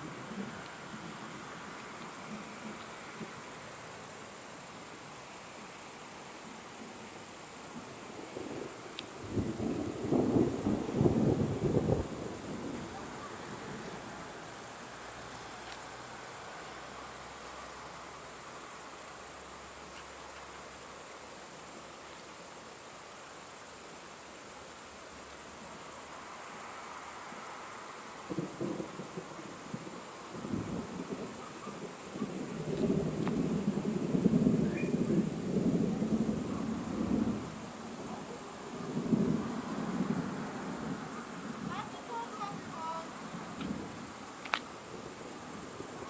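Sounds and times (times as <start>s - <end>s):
crickets shrilling: 0.0s - 46.0s
thunder rumbling: 7.8s - 14.9s, 28.3s - 44.2s.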